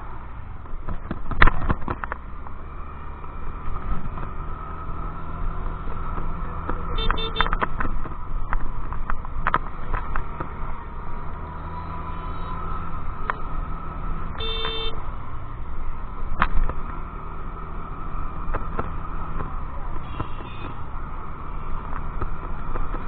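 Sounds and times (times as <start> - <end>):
scooter engine and road noise: 0.0 - 23.0
vehicle horn toot: 6.9 - 7.6, 14.4 - 15.0, 20.0 - 20.8.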